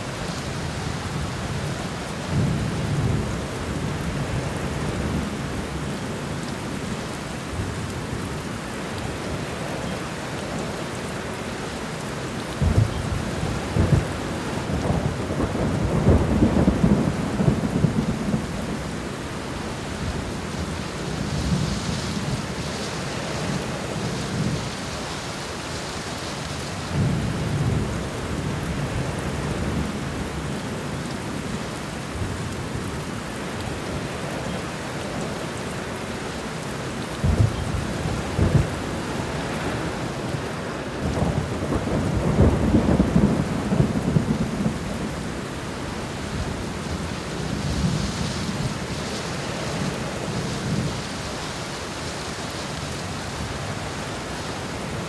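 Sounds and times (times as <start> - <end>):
steady rain falling: 0.0 - 55.0
thunder rumbling: 12.6 - 19.1, 37.1 - 51.5.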